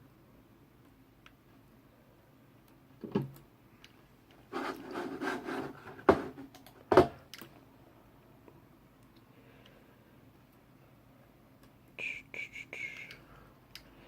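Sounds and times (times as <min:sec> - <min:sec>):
cable rubbing and rustling: 0:04.4 - 0:06.6
knocks on hard surface: 0:06.0 - 0:07.2.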